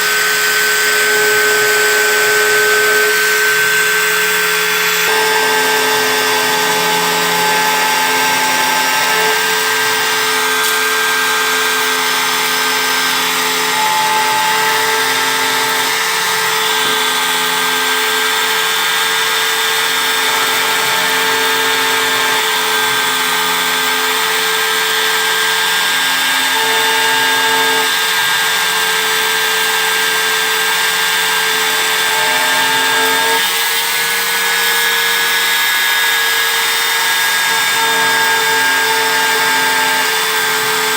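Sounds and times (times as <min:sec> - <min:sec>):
engraving machine high whine: 0:00.0 - 0:40.9
low motor tones: 0:01.0 - 0:18.4.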